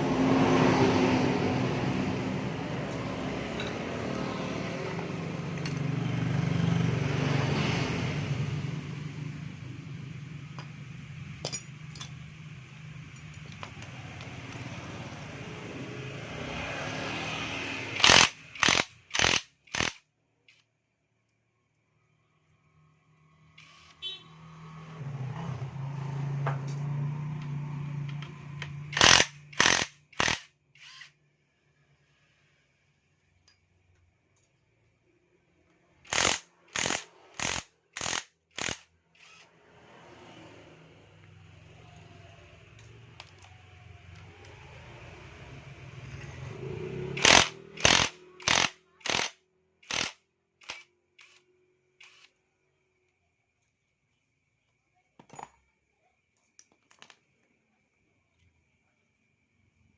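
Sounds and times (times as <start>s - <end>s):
power tool motor humming: 17.8s - 20.0s, 28.9s - 31.1s, 36.1s - 39.5s, 47.2s - 51.4s, 52.0s - 52.3s.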